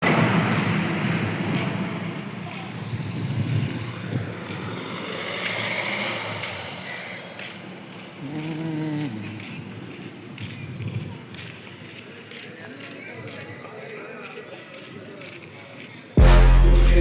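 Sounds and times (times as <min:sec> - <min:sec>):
roadside traffic noise: 0:00.0 - 0:13.4
short pitched tone: 0:16.2 - 0:17.0.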